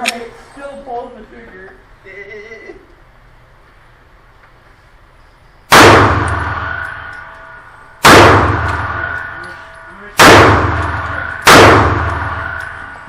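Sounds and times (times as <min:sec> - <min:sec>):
pistol shots echoing: 0:05.7 - 0:07.3, 0:08.0 - 0:13.0.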